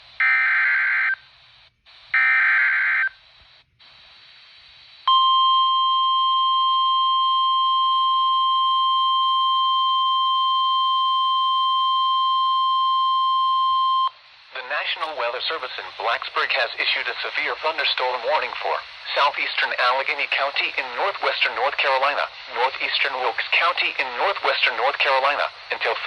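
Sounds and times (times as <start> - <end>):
faint static hiss: 0.0 - 5.5, 14.0 - 26.0.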